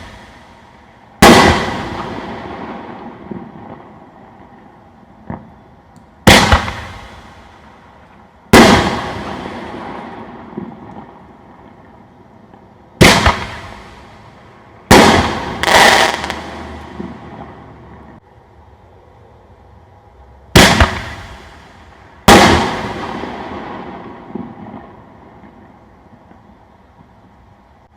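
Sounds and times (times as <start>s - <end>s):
firework booms with rumbling tail: 1.2s - 3.8s, 6.3s - 7.4s, 8.5s - 10.8s, 13.0s - 14.0s, 14.9s - 17.5s, 20.6s - 25.0s.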